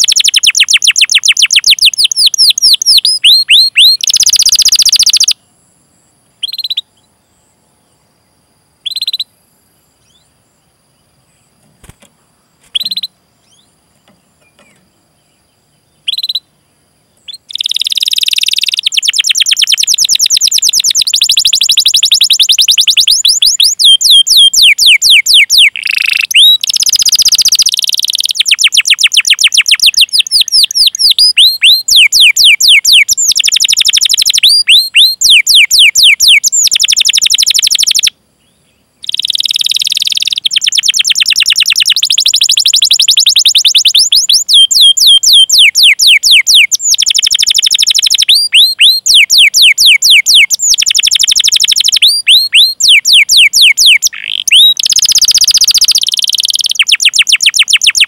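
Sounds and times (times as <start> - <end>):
canary fast rolling trill: 0.0 - 5.4, 17.3 - 38.1, 39.0 - 58.0.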